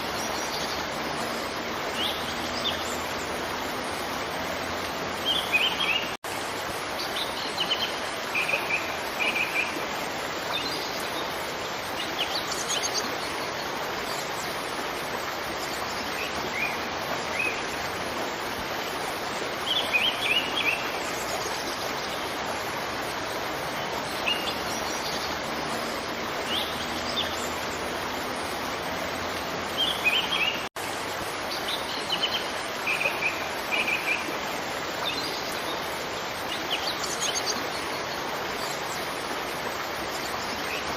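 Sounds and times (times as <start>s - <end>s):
waterfall rushing: 0.0s - 40.9s.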